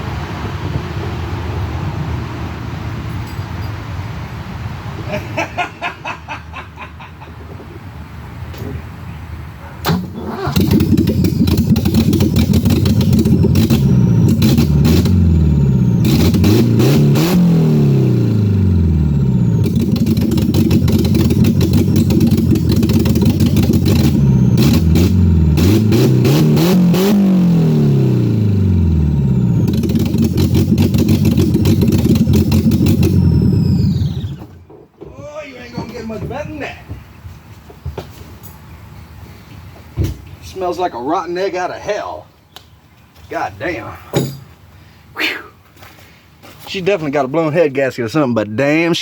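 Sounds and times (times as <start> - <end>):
engine cranking on starter: 9.8 - 27.4, 28.1 - 34.6
engine revving: 9.9 - 34.6.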